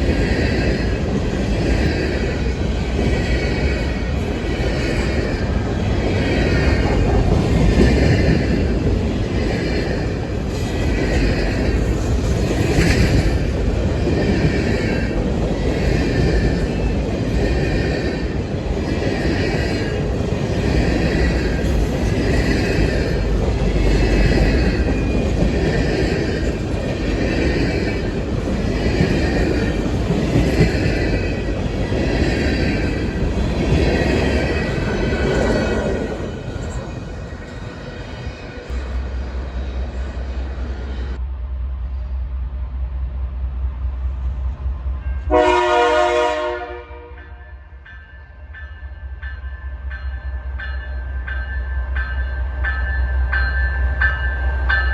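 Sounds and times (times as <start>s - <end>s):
train wheels screeching: 0.0s - 41.2s
train rumbling past: 0.0s - 54.9s.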